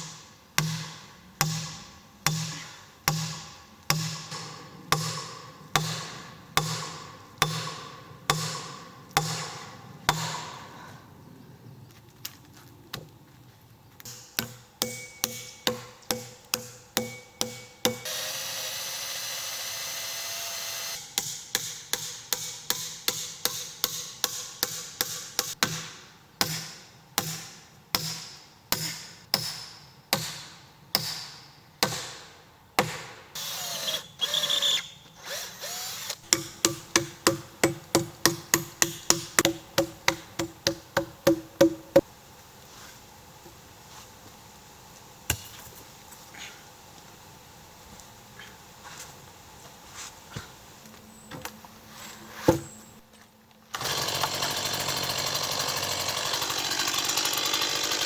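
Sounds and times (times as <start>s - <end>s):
hammer striking nails into wood: 0.6s - 10.5s, 14.1s - 18.0s, 36.3s - 42.0s
cordless drill whirring: 18.0s - 21.0s, 33.4s - 36.2s, 53.8s - 58.0s.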